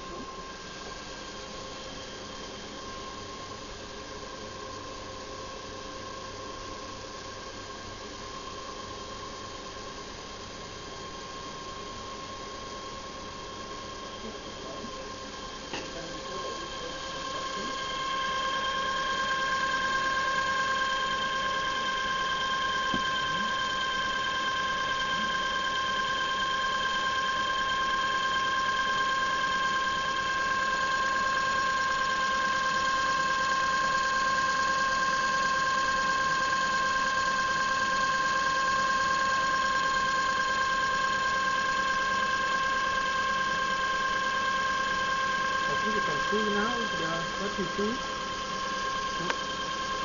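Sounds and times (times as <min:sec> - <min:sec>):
electrical discharge machine whine: 0:11.3 - 0:50.0
machine hiss: 0:14.1 - 0:50.0.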